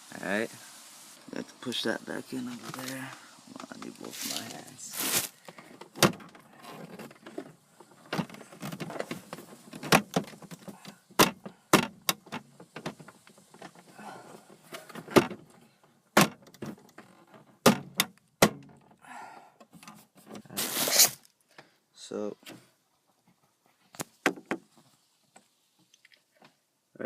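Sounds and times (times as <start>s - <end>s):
plastic rustling: 2.1s - 15.9s, 20.1s - 21.4s.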